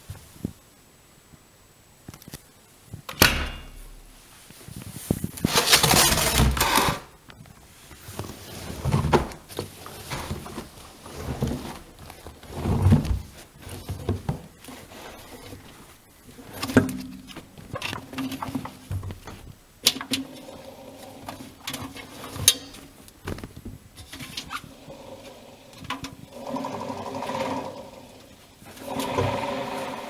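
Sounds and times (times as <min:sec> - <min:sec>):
washing machine door click: 0:03.1 - 0:04.1
rustling: 0:03.7 - 0:19.8.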